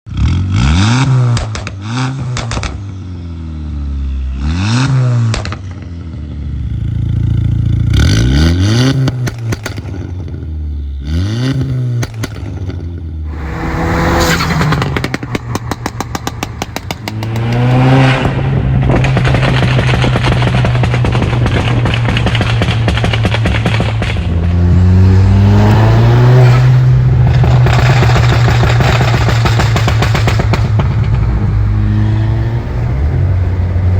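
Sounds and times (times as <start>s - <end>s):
exhaust pops and crackles: 1.3s - 2.9s, 8.9s - 10.5s, 11.6s - 13.0s, 14.7s - 24.9s, 26.5s - 31.6s
car engine revving: 6.4s - 33.9s.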